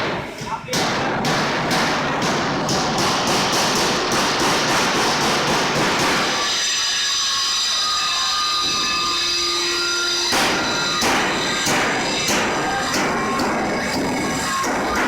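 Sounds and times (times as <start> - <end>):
pulsing machine noise: 2.1 - 15.0
high-pitched machine whine: 4.9 - 15.0.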